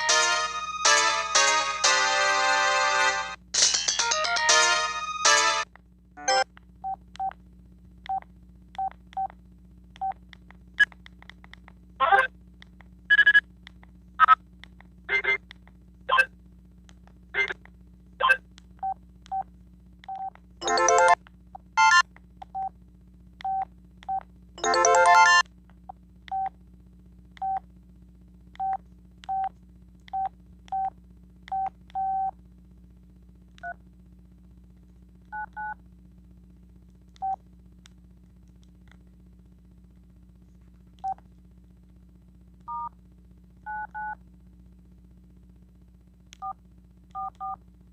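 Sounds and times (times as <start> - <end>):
fuller phone sounds: 6.2 - 6.5, 12.0 - 12.3, 13.1 - 13.4, 14.2 - 14.4, 15.1 - 15.5, 16.1 - 16.3, 17.4 - 17.6, 18.2 - 19.4, 20.1 - 22.7, 23.5 - 25.4.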